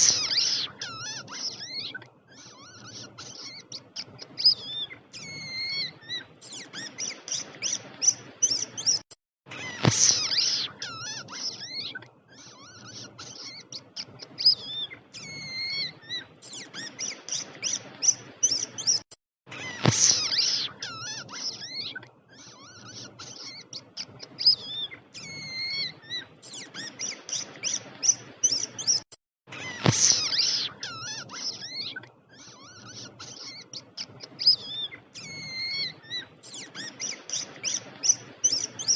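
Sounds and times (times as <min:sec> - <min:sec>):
rat squeaking: 0:00.0 - 0:38.9.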